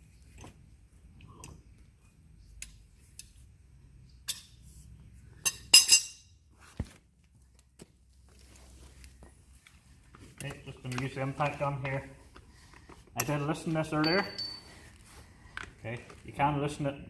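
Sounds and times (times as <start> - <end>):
steel hand tools clinking: 14.0 - 14.7.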